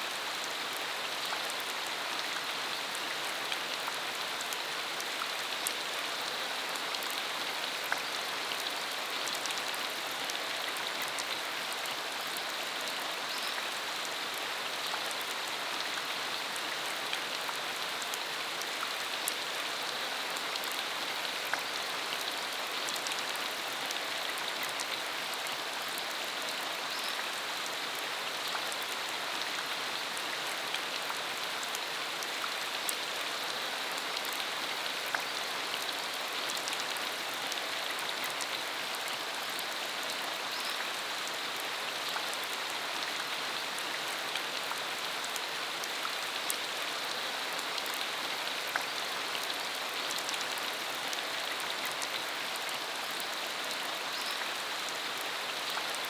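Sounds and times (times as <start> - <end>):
rain falling on dirt road: 0.0 - 56.0.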